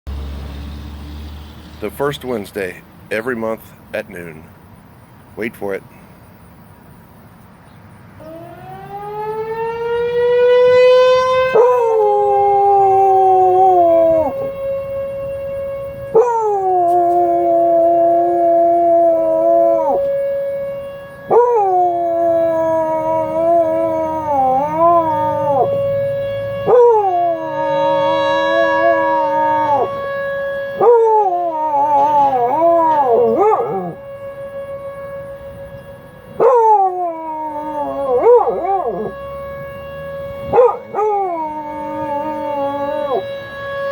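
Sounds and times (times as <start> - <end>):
warning siren: 0.1 - 43.9
dog howling: 11.5 - 14.4, 16.2 - 20.0, 21.3 - 25.8, 26.6 - 29.9, 30.8 - 34.0, 36.4 - 39.2, 40.5 - 43.2.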